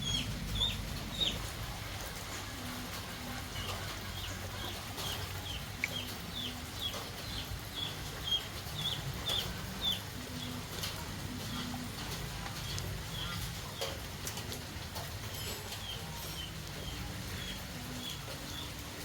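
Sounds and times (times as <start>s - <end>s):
low background rumble: 0.0s - 3.4s
chickens peeping: 0.0s - 19.0s.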